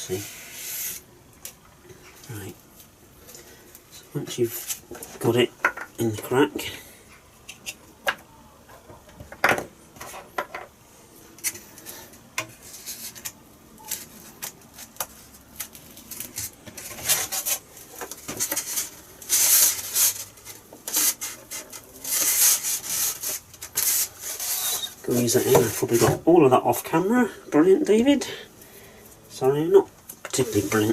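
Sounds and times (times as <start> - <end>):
rough scraping and rubbing: 0.0 - 1.1, 12.5 - 13.4, 14.0 - 26.2, 30.4 - 30.9.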